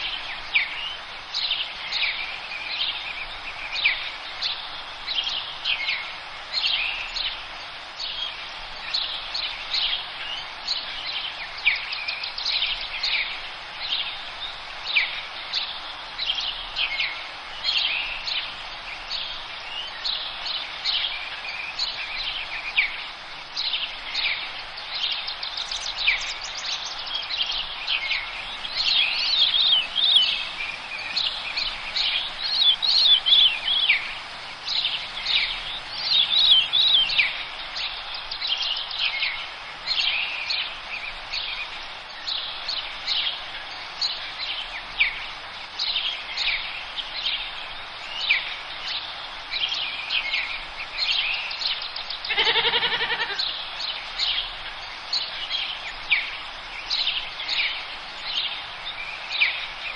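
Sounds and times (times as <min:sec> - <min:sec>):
small birds chirping and trilling: 0:00.0 - 0:59.9
steady background hiss: 0:00.0 - 0:59.9
harsh bird call: 0:52.3 - 0:53.5.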